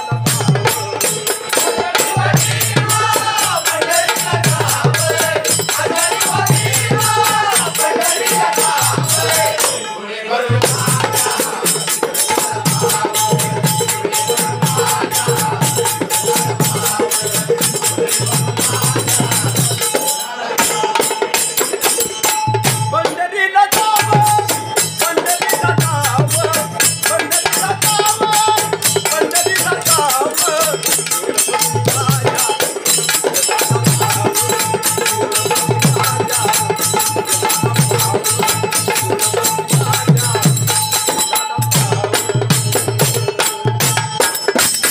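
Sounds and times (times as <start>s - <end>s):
jingling hand percussion: 0.0s - 44.9s
pulsing drum beat: 0.0s - 44.9s.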